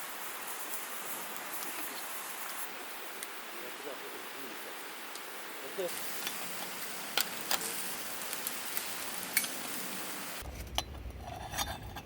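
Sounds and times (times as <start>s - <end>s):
steady hiss: 0.0s - 10.6s
camp cookware clinking: 5.9s - 12.0s.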